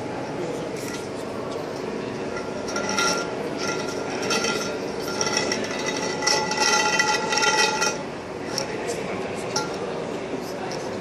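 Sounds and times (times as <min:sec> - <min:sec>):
metal ringing and clinking: 0:02.2 - 0:08.7, 0:09.5 - 0:09.9.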